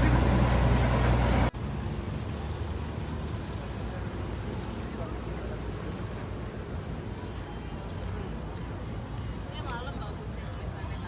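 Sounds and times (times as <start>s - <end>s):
boat engine low rumble: 0.0s - 8.4s.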